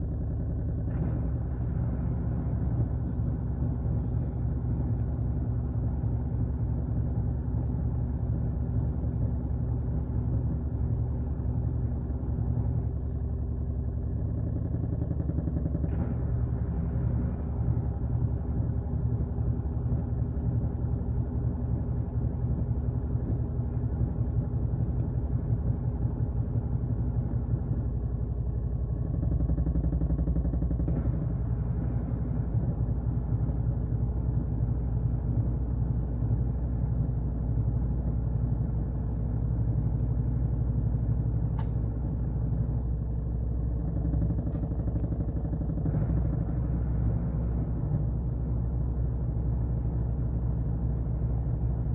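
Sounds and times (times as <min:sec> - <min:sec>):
sharp click: 0:41.5 - 0:41.8.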